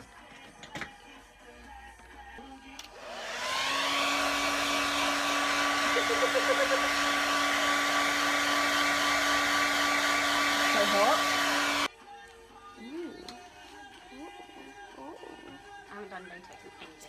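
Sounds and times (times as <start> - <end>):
hair dryer whining and blowing: 2.8 - 11.9.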